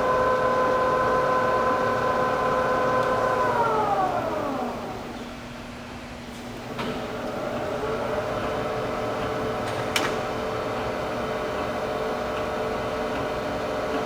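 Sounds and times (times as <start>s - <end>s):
lathe gear whine: 0.0s - 5.2s.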